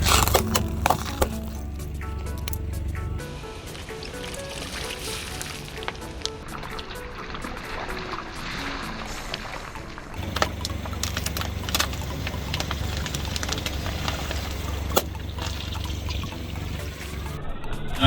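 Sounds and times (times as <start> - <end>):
tyre crushing objects: 0.0 - 2.7, 3.6 - 7.6
car rumbling: 0.0 - 8.4, 10.0 - 17.4.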